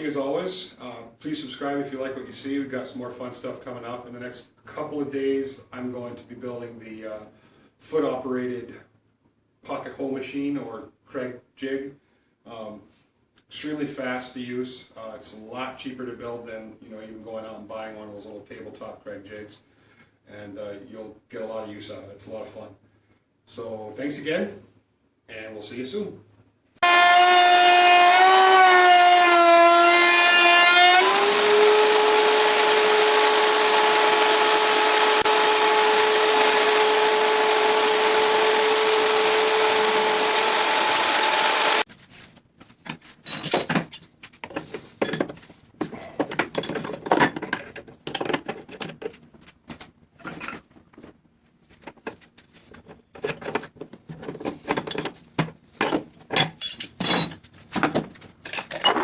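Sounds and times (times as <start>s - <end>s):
wood router motor whining: 26.8s - 41.8s.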